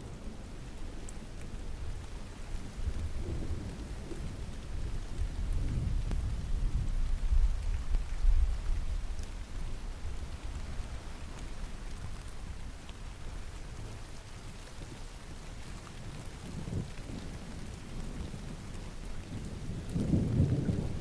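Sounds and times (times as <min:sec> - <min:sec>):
steady rain: 0:00.0 - 0:21.0
distant thunder rumbling: 0:19.8 - 0:21.0.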